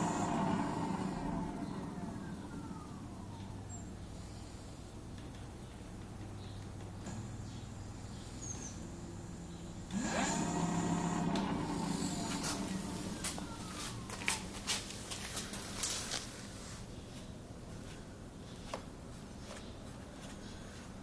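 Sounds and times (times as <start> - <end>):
electric motor whine: 0.0 - 2.9, 8.1 - 14.1.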